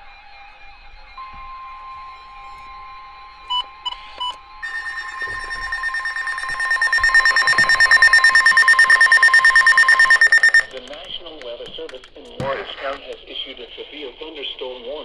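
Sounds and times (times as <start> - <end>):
short electronic beeps: 3.5 - 11.2
pulsing electronic alarm tone: 4.6 - 11.0.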